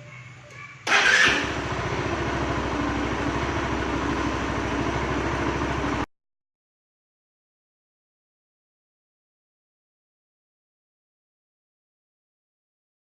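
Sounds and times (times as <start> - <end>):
motorcycle engine starting: 0.8 - 6.1
motorcycle engine idling: 0.9 - 6.1.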